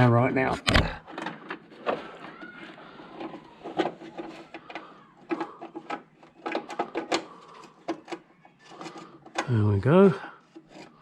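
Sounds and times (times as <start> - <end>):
small parts clicking and knocking: 0.7 - 11.0.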